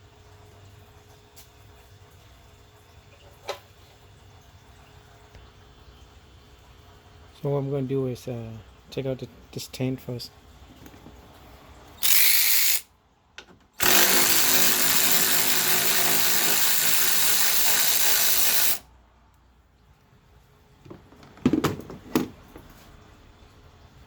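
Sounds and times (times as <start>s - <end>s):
power tool spinning fastener: 12.0s - 12.8s, 13.8s - 18.8s.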